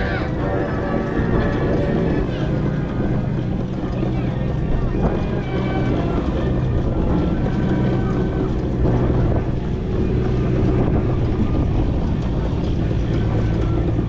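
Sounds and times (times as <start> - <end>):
traction engine mechanical hum: 0.0 - 14.0
wind noise on microphone: 0.0 - 14.0.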